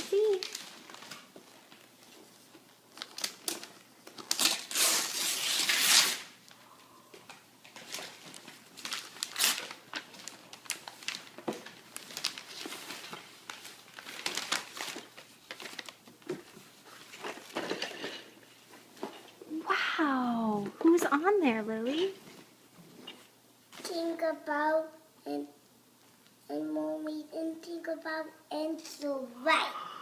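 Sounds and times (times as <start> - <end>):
wrapping paper tearing and crumpling: 0.0 - 2.0, 2.9 - 6.4, 7.8 - 16.0.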